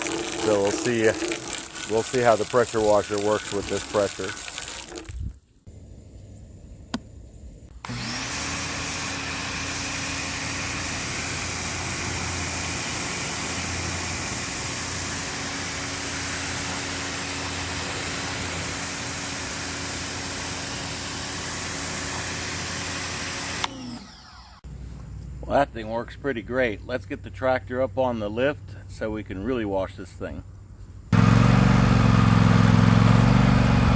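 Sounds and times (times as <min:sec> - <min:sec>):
pressure washer spraying: 0:00.0 - 0:05.1, 0:07.9 - 0:23.7.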